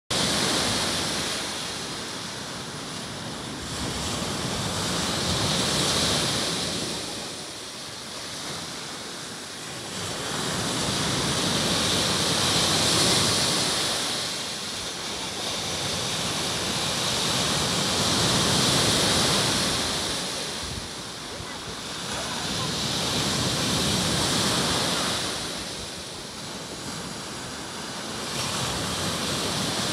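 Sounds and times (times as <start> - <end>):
surf breaking on shore: 0.1 - 29.9.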